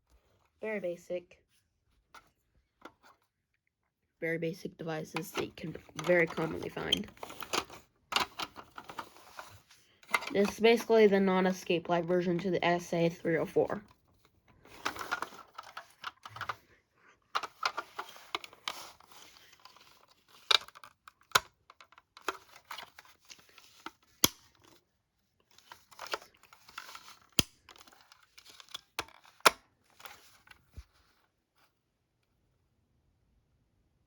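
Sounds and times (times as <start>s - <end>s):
plastic rustling and scraping: 5.1s - 11.1s, 13.0s - 24.8s, 25.5s - 31.7s.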